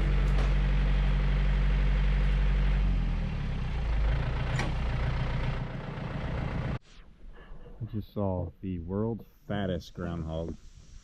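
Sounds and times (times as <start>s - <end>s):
tractor diesel engine running: 0.0s - 6.8s.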